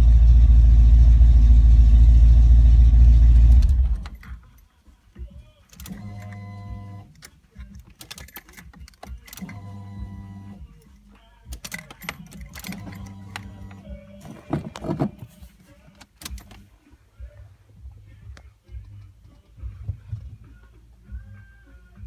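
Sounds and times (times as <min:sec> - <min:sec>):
car engine shutting off: 0:00.0 - 0:04.3
keys rattling: 0:03.8 - 0:04.7, 0:05.6 - 0:09.8, 0:10.6 - 0:16.7.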